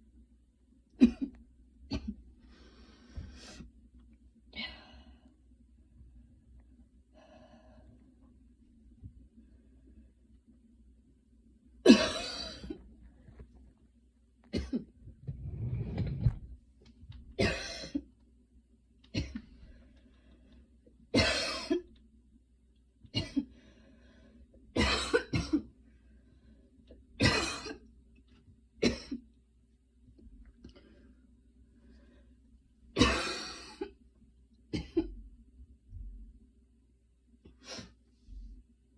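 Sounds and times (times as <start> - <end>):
woman coughing: 1.0 - 1.3, 11.9 - 12.8, 14.5 - 14.9, 17.4 - 18.0, 21.2 - 21.8, 23.2 - 23.5, 24.8 - 25.7, 27.2 - 27.8, 33.0 - 34.0, 34.7 - 35.1.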